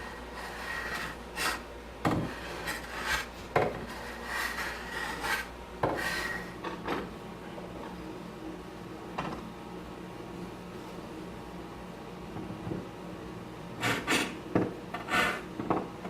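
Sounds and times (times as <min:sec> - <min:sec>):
hand tool scraping wood: 0:00.0 - 0:01.6, 0:02.3 - 0:06.5, 0:15.0 - 0:15.5.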